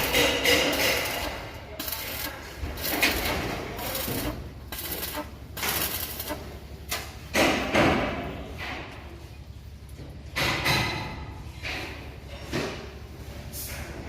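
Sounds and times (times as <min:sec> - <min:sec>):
knocks and scrapes: 0:00.0 - 0:09.4
steady background hum: 0:00.0 - 0:14.0.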